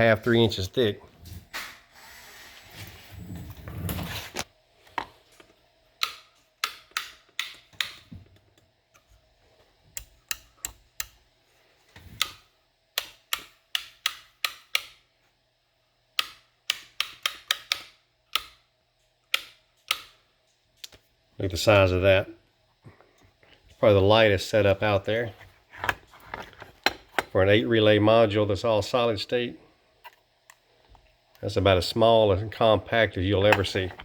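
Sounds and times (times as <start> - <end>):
rocker switches clicking: 6.0 - 8.0, 10.0 - 11.2, 13.0 - 15.0, 16.2 - 18.6, 19.3 - 20.1.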